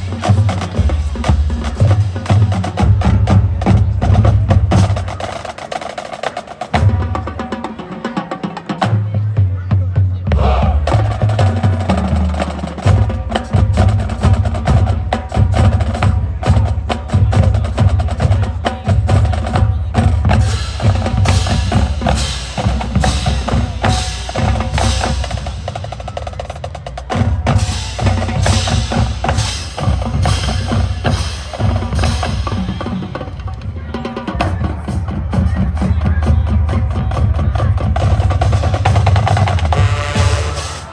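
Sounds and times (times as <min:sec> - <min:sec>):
snare drum rolls: 0:10.3 - 0:40.9.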